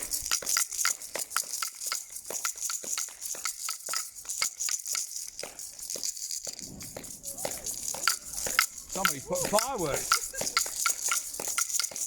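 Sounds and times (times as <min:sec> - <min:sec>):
people clapping: 0:07.4 - 0:12.0.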